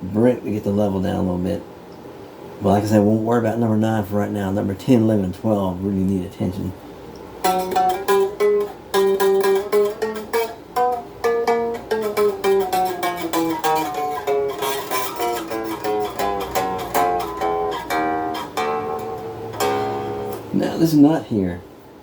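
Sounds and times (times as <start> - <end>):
electric guitar notes: 7.2 - 20.6.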